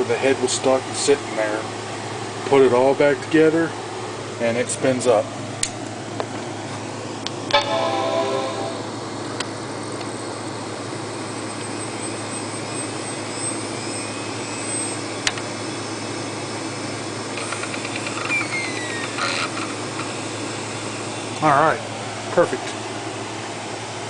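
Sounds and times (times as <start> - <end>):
computer fan hum: 0.0 - 24.0
hard drive spinning up whine: 10.8 - 21.2.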